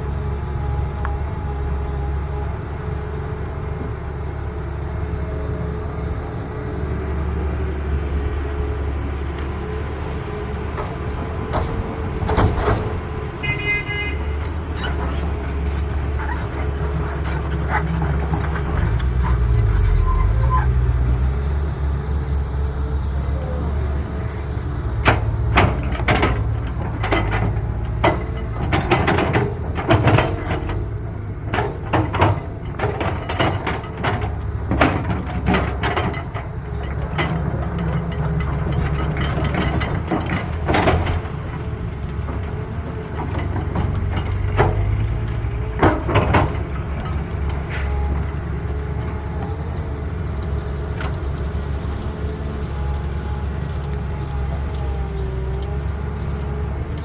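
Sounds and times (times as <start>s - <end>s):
diesel engines running: 0.0s - 57.0s
short horn toot: 13.4s - 15.1s.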